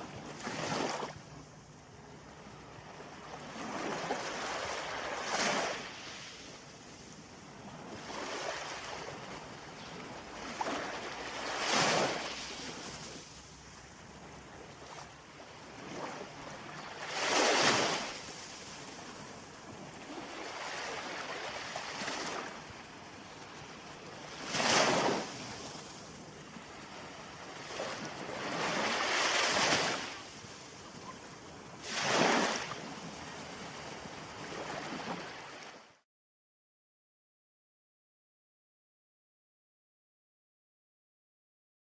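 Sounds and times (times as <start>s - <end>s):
ocean waves breaking: 7.5s - 13.5s, 14.1s - 35.9s.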